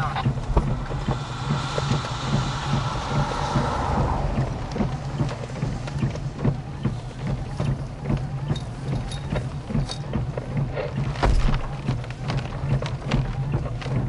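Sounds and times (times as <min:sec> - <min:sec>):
precipitation hits: 0:00.0 - 0:07.6
wind buffeting microphone: 0:00.0 - 0:09.8
low rumble: 0:00.0 - 0:13.9.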